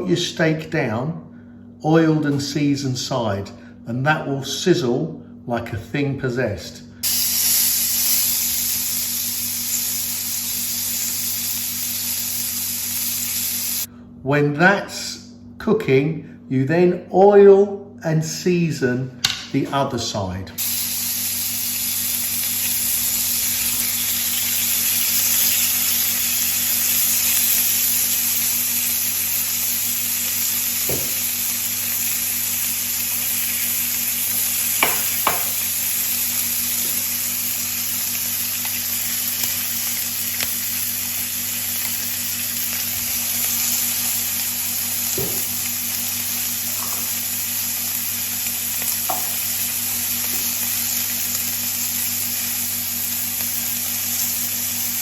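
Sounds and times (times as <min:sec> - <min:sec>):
steak sizzling on griddle: 0:07.0 - 0:13.9, 0:20.6 - 0:55.0.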